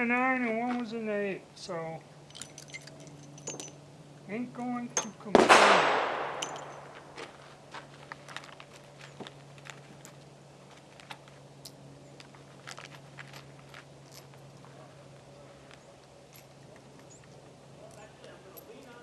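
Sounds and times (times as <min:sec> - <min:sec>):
handling clicks and taps: 0:02.3 - 0:03.7, 0:06.4 - 0:07.0.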